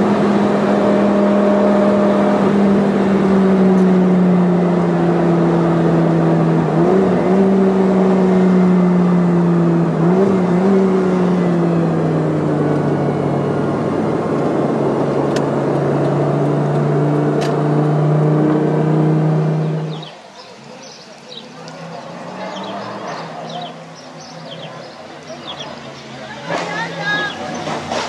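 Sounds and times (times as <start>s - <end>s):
sports car engine running: 0.0s - 26.6s.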